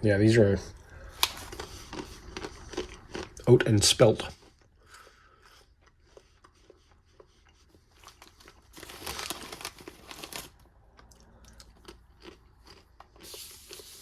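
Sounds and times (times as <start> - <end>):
plastic food pouch crinkling: 8.0 - 10.7.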